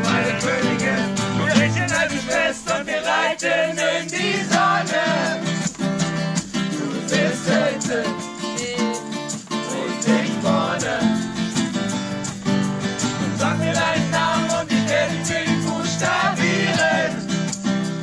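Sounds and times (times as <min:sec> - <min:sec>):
person singing: 0:00.0 - 0:05.5
acoustic guitar strumming: 0:00.0 - 0:18.0.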